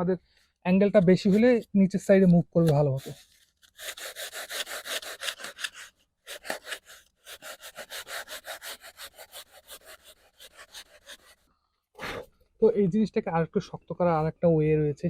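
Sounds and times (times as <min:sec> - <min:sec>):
sandpaper scraping foam: 0:00.8 - 0:11.5.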